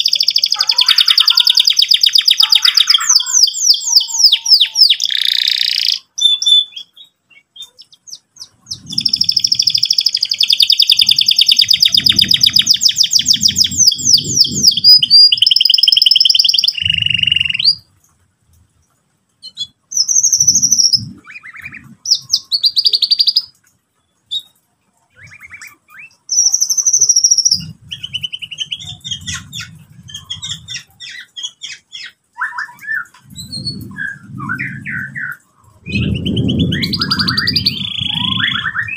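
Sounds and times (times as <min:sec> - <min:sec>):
canary singing trills: 0:00.0 - 0:18.0, 0:19.4 - 0:38.9.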